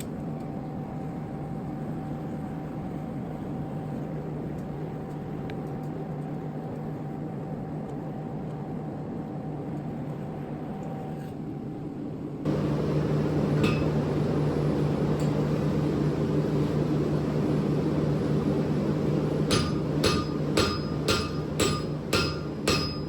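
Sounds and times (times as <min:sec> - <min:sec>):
equipment humming: 0:12.4 - 0:23.0
hammer blows on hot steel: 0:12.5 - 0:23.0.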